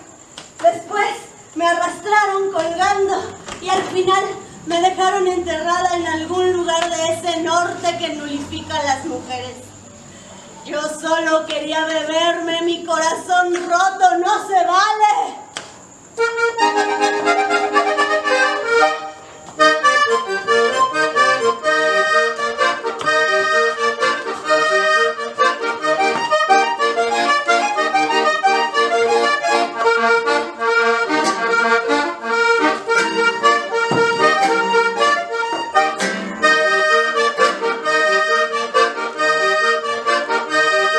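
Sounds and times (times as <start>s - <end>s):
accordion music with quick runs: 16.2s - 40.9s.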